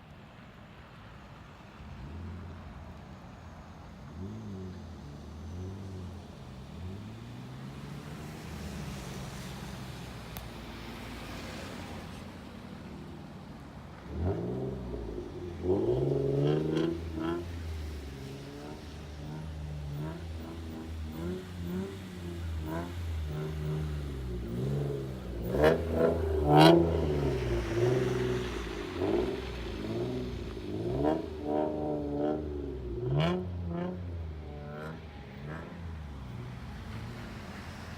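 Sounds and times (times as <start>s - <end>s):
car engine revving: 13.9s - 37.9s.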